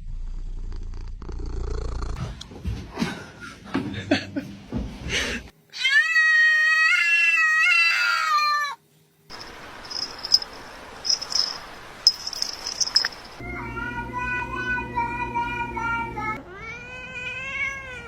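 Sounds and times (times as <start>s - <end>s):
cat meowing: 5.8s - 8.8s, 13.5s - 18.0s
faint hiss: 8.8s - 13.4s.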